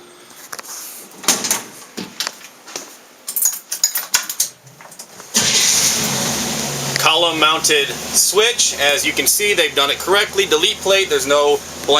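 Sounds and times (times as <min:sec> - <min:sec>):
light metal clinks: 0:03.3 - 0:04.5.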